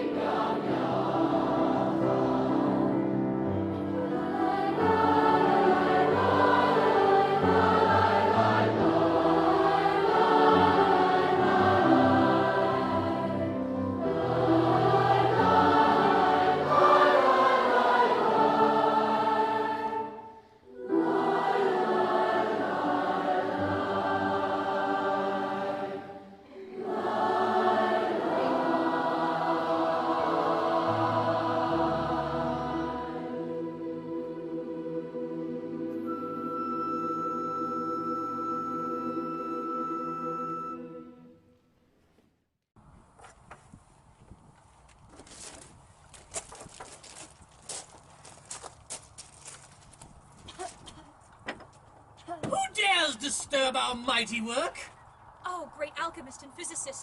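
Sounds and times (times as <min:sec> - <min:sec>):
choir singing slow chords: 0:00.0 - 0:41.7.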